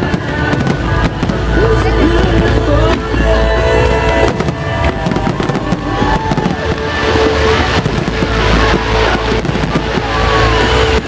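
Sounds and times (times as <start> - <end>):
fireworks bangs and crackles: 0.0 - 11.0.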